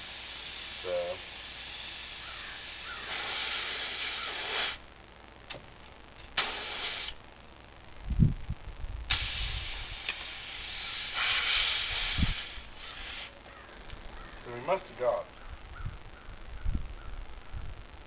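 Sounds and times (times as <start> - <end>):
air hissing from tire: 0.0 - 4.8, 6.4 - 7.2, 9.1 - 13.4.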